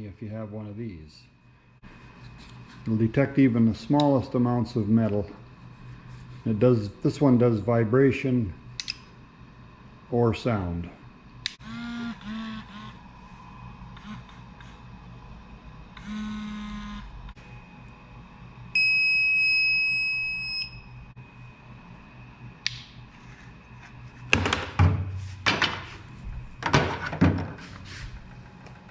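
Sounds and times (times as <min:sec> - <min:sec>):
click: 0:08.8 - 0:09.0
metal detector vibration buzz: 0:11.6 - 0:13.2, 0:14.0 - 0:14.9, 0:16.0 - 0:17.3
metal detector high beep: 0:18.8 - 0:20.9
rustling and knocking: 0:24.2 - 0:28.6.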